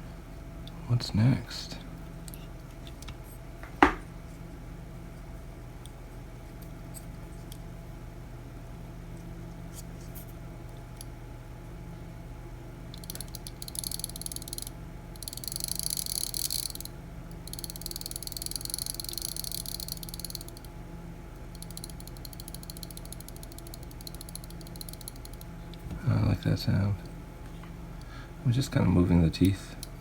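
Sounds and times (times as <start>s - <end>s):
clock gears ratcheting clicks: 12.9s - 20.7s, 21.5s - 25.5s.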